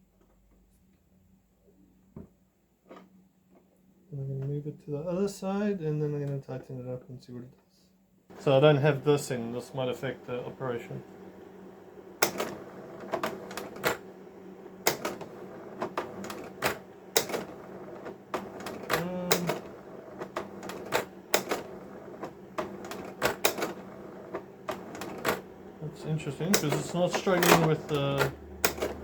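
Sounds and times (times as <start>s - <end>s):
projector running hum: 8.3s - 29.0s
slide projector mechanism clacking: 14.9s - 29.0s.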